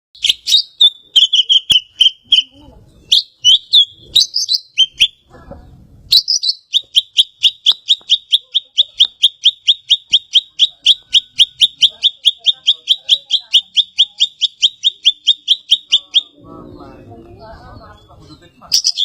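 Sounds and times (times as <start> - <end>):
leafbird singing rapid chips: 0.2 - 5.3, 6.0 - 16.4, 17.8 - 19.0.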